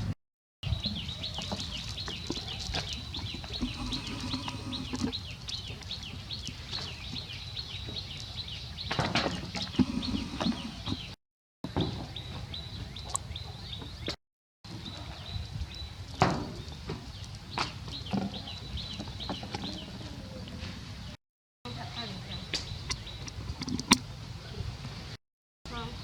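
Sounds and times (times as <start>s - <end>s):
outdoor background hum: 0.0s - 15.1s
small animal chirping: 1.6s - 5.4s, 9.7s - 11.1s.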